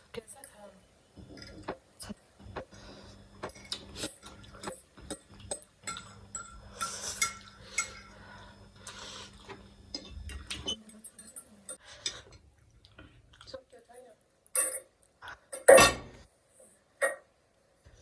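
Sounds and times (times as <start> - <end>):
faint steady hum: 0.0 - 18.0
utensils clinking against bowl: 3.4 - 8.2, 8.8 - 12.4, 14.6 - 14.9.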